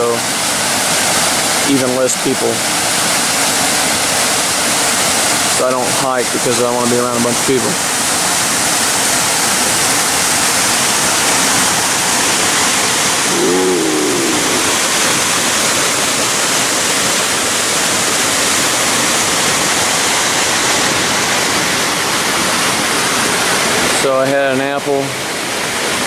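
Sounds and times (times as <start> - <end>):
waterfall and stream rushing: 0.0 - 26.0
faint pitched sound: 13.2 - 15.0.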